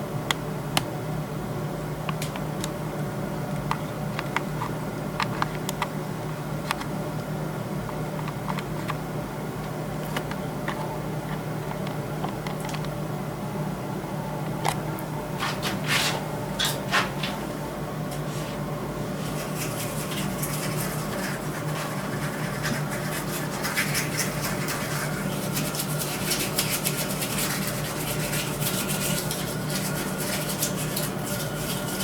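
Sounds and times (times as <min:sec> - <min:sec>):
steady low hum: 0:00.0 - 0:32.0
brush scrubbing: 0:15.4 - 0:17.5, 0:18.2 - 0:32.0.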